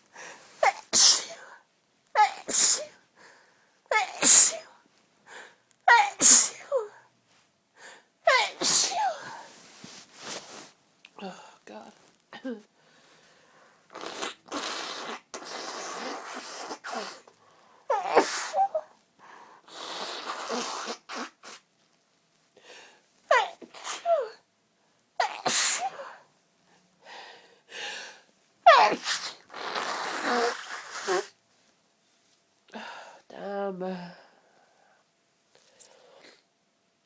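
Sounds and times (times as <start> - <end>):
person sneezing: 0.6 - 1.6, 2.2 - 3.0, 3.9 - 4.7, 5.9 - 7.0, 8.3 - 9.5, 17.9 - 18.9, 23.3 - 24.4, 25.2 - 26.2, 28.7 - 31.3
breathy breathing: 27.0 - 28.3.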